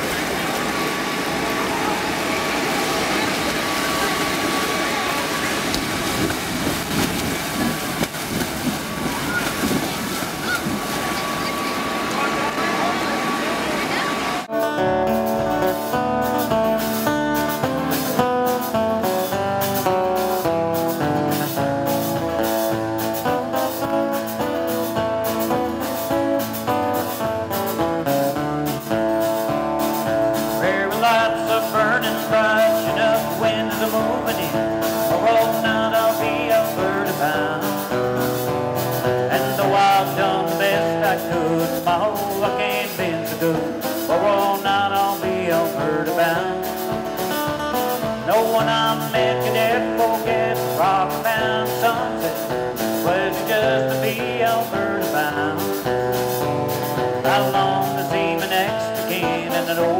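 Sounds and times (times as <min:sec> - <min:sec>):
country music with drums and guitar: 0:14.5 - 0:59.9.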